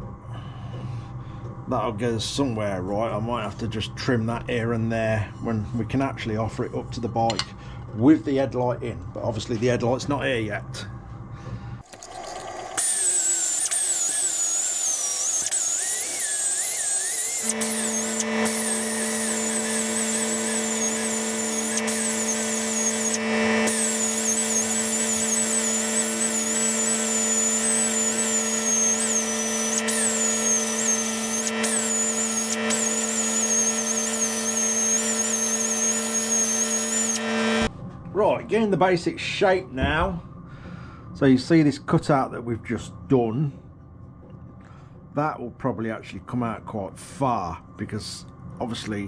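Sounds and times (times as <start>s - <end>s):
power tool cutting metal sheet: 11.8s - 37.7s.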